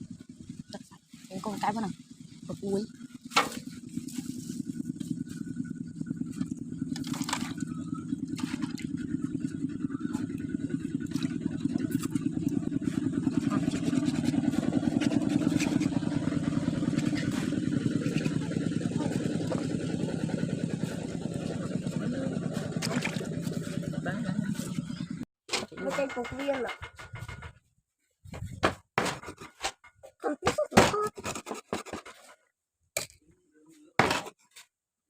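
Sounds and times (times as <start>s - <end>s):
engine humming: 0.0s - 27.4s.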